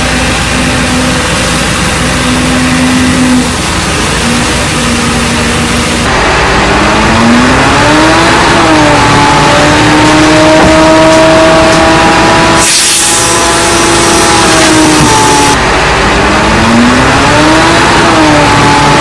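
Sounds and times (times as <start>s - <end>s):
diesel engine revving: 0.0s - 19.0s
short hiss: 12.6s - 13.4s.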